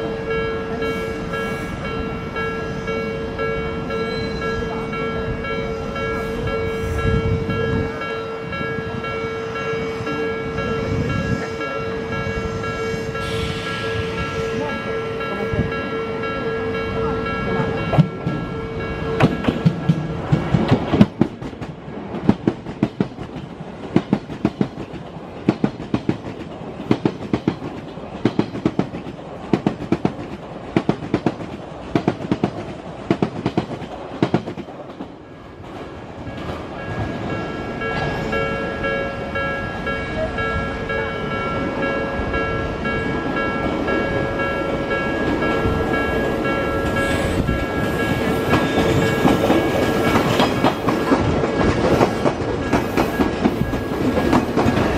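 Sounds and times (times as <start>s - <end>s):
level-crossing warning bell: 0.0s - 20.4s, 35.0s - 54.9s
rumble of rail noise: 0.0s - 54.9s
train wheels clacking over rail joints: 19.2s - 37.1s, 45.2s - 54.9s.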